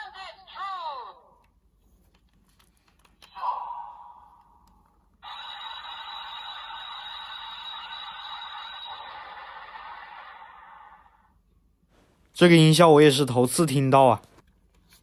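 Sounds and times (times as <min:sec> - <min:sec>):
toy electronic sound effect: 0:05.2 - 0:11.2.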